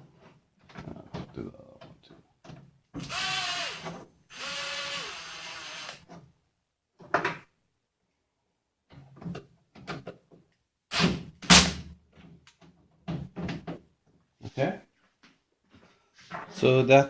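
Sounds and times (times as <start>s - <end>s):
electric drill driving screw: 3.0s - 6.0s, 10.9s - 11.6s.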